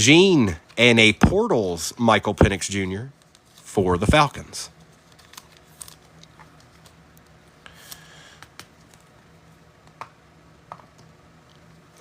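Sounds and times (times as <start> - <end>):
faint steady hum: 0.0 - 12.0
trading cards clicking and rustling: 4.8 - 9.1.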